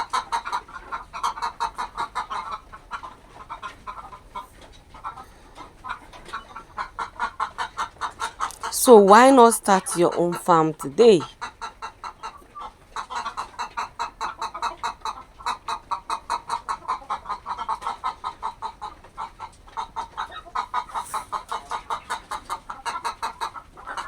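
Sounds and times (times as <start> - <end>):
chickens clucking: 0.2 - 10.3.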